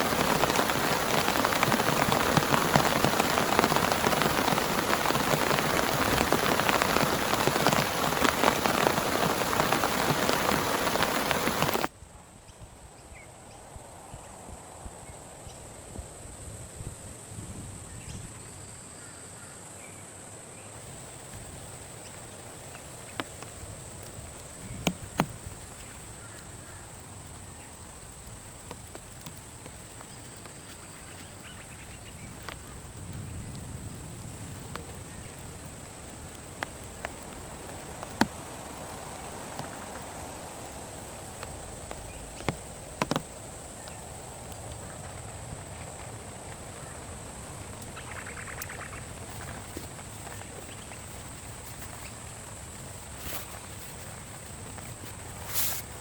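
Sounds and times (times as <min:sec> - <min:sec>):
soft background hiss: 0:00.0 - 0:56.0
sharp taps: 0:41.4 - 0:43.4.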